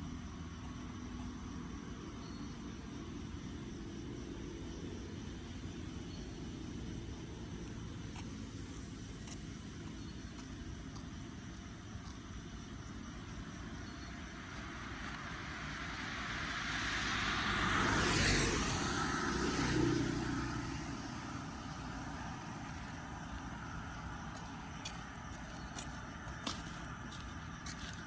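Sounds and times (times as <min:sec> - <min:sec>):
vehicle driving past: 0:14.3 - 0:25.2.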